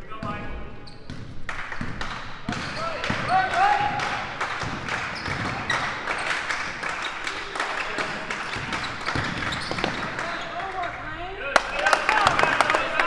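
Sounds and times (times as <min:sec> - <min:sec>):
basketball bouncing on gym floor: 0:00.2 - 0:06.0, 0:08.4 - 0:10.2.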